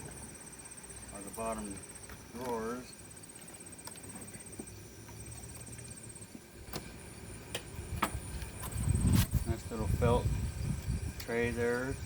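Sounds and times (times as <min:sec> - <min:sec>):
faint insect trill: 0:00.0 - 0:12.0.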